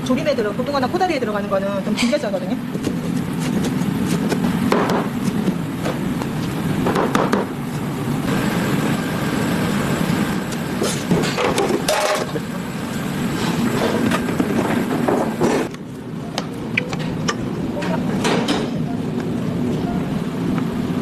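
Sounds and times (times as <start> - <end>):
knocks and clatter of food preparation: 2.7 - 7.5, 11.1 - 12.4, 13.8 - 15.8, 16.4 - 18.8.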